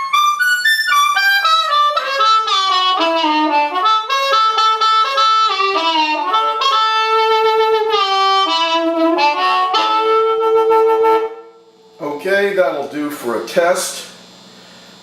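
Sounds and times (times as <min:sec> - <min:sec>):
amplified blues harmonica: 0:00.0 - 0:11.8.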